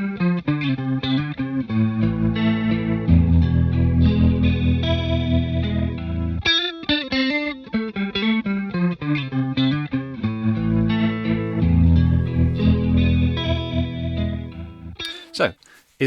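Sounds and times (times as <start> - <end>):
electric guitar chords with chorus: 2.0 - 6.6
picked electric guitar notes: 2.0 - 6.6, 10.9 - 15.0.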